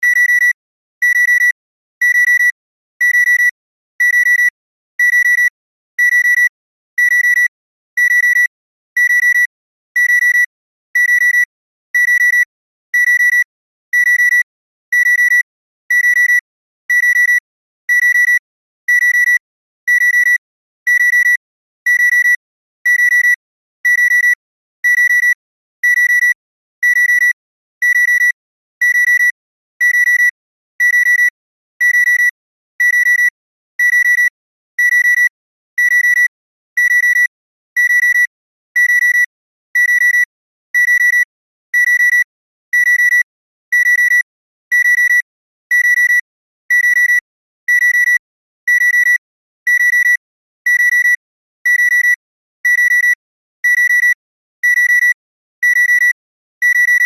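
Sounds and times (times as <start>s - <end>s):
electronic clock beeping: 42.8s - 45.2s, 47.7s - 50.1s, 51.7s - 54.1s, 54.7s - 57.0s.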